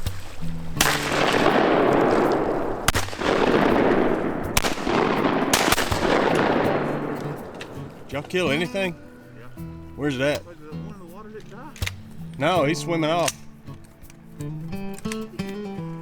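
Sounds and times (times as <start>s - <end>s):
shotgun shots: 0.8s - 9.1s.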